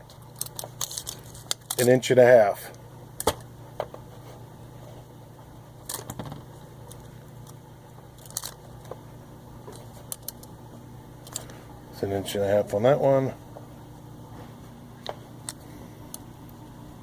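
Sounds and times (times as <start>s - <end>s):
cord wires crackling and clicking: 0.0s - 3.4s, 5.8s - 9.0s, 9.6s - 10.6s
steady low hum: 0.0s - 17.0s.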